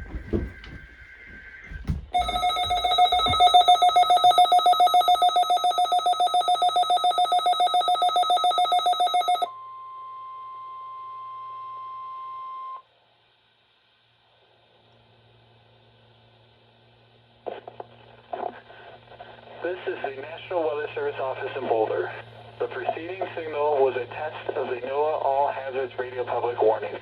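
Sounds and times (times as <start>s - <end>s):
steady warning alarm tone: 0.0s - 9.6s
rapid pulsing alarm beeps: 1.7s - 9.5s.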